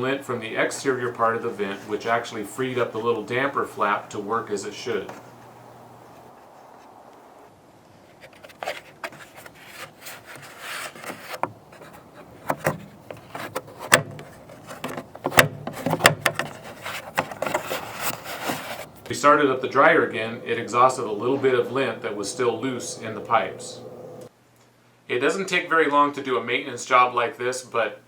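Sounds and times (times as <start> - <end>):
rubbing and scraping on vent hood: 8.2 - 24.3.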